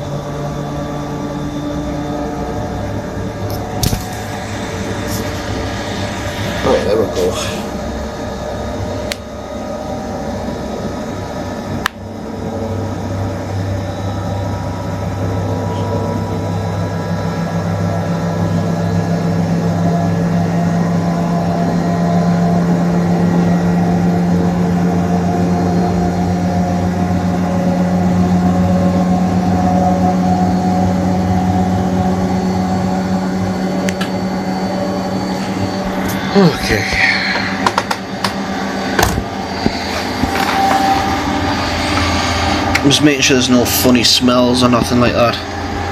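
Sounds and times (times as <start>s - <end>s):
washing machine motor hum: 0.0s - 9.5s.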